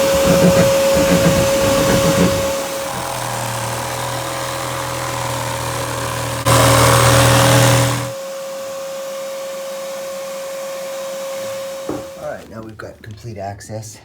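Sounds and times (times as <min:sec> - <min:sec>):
power tool cutting wall: 0:00.0 - 0:12.7
vacuum whine: 0:00.0 - 0:12.7.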